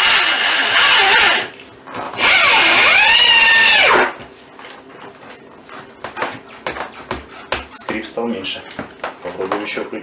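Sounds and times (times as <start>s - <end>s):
drill driving screw into wood: 0.0s - 1.5s, 2.2s - 4.2s.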